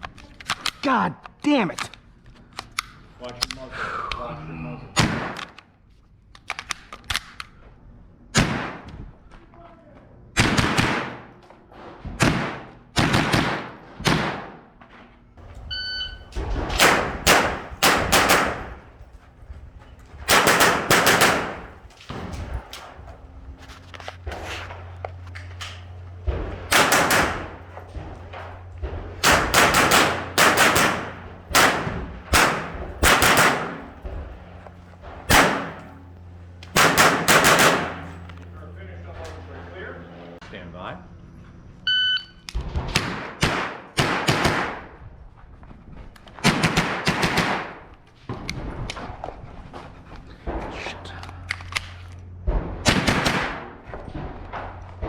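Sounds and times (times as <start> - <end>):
gunshots with short echo: 15.4 - 40.2.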